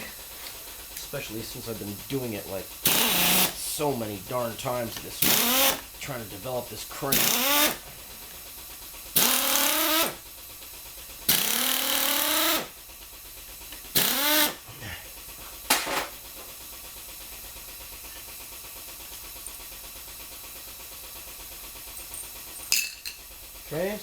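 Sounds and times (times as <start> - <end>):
exhaust air hiss: 0.0 - 22.7
pneumatic screwdriver whirring: 2.8 - 3.6, 4.9 - 5.9, 7.1 - 7.8, 9.1 - 10.2, 11.3 - 12.8, 13.7 - 14.6.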